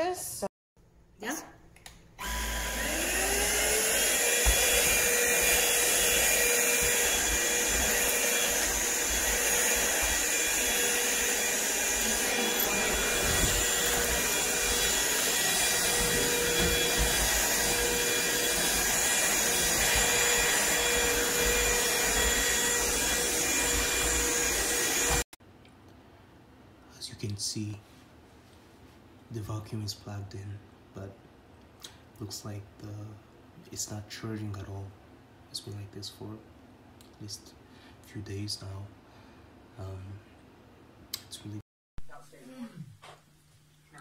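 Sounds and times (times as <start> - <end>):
vacuum cleaner motor whining: 2.2 - 25.3.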